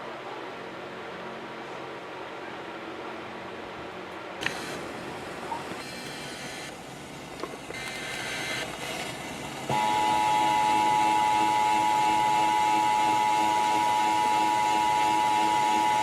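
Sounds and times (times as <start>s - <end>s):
two-tone alarm: 9.7s - 16.0s.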